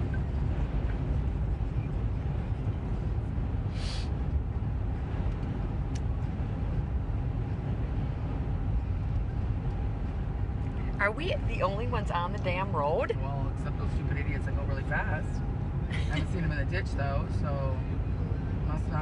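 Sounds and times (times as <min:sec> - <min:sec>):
car cabin driving rumble: 0:00.0 - 0:19.0
brief hiss: 0:03.7 - 0:04.1.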